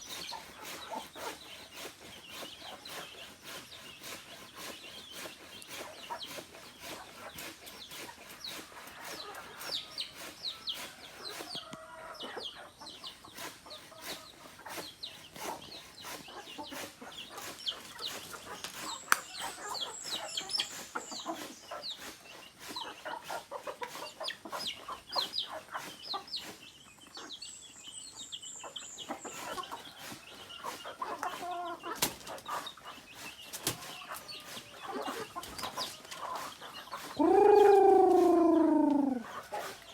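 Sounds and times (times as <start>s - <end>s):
chickens clucking: 0.0s - 39.9s
low pitched chicken calls: 36.4s - 39.8s.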